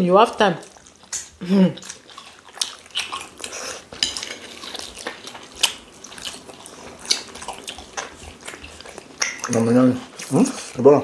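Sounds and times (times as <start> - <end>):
chewing and mouth sounds: 0.0 - 11.0
cutlery clinking on plate: 3.9 - 4.4.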